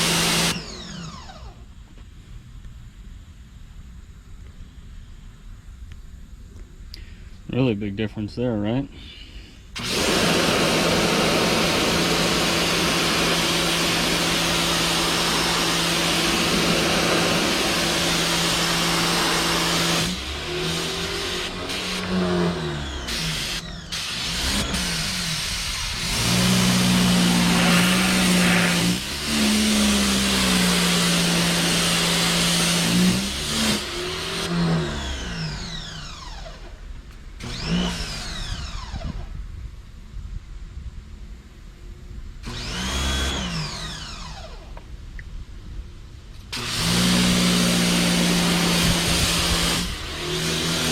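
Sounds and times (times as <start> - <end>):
pressure washer motor humming: 0.0 - 1.6, 9.8 - 36.7, 46.5 - 50.9
water spray hissing: 9.8 - 34.5.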